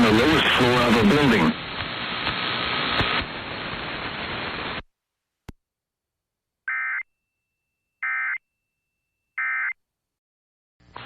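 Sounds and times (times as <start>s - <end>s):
spoken alert: 0.0s - 1.6s
radio hiss: 0.0s - 4.8s.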